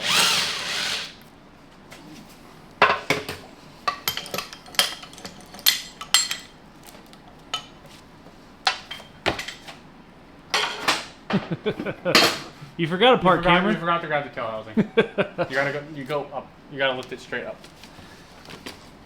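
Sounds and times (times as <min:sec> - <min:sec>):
metal tools clinking and clanking: 0:03.9 - 0:06.5.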